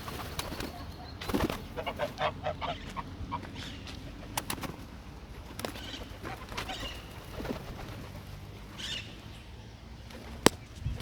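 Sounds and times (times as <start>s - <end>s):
geese honking: 0.0s - 3.9s.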